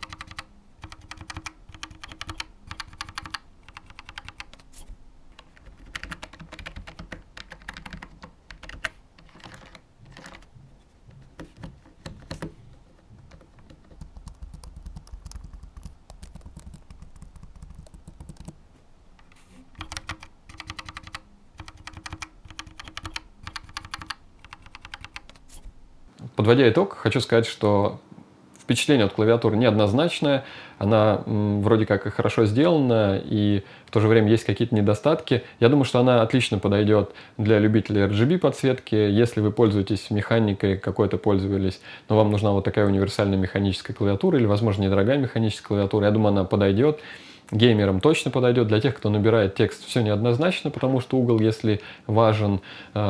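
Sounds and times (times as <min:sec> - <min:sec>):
mechanical keyboard key clicks: 0:00.0 - 0:04.7, 0:19.8 - 0:25.4.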